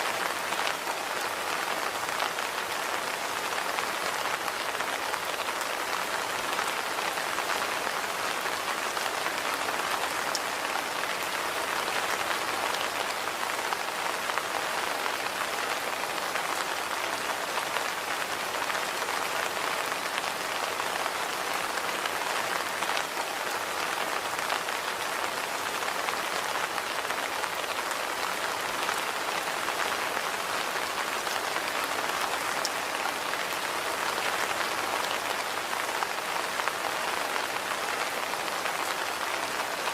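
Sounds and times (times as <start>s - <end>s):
rain on hard surface: 0.0s - 39.9s.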